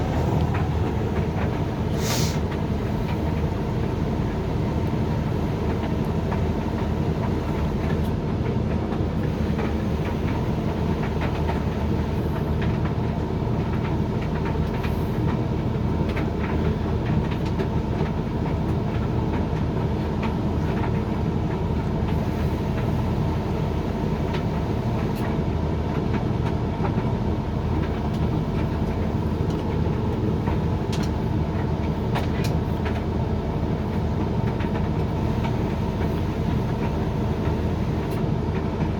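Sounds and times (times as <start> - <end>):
tumble dryer rumbling and humming: 0.0 - 38.9
light clicks of tumbling load: 27.8 - 38.9.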